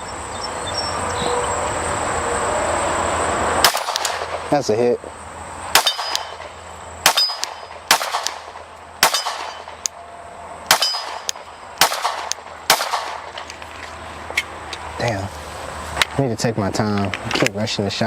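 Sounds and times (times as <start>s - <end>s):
pistol shots: 3.6s - 4.5s, 5.7s - 9.9s, 10.7s - 13.5s
bullets ringing steel targets: 3.6s - 4.6s, 5.7s - 9.9s, 10.7s - 13.4s.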